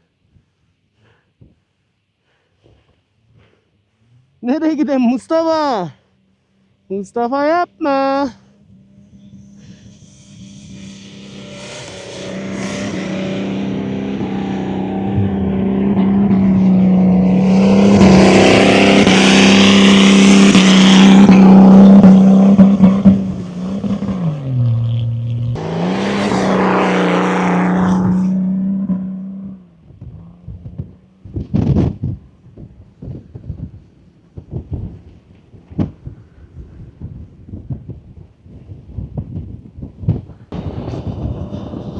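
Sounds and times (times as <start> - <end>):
off-road vehicle engine revving: 7.4 - 32.2.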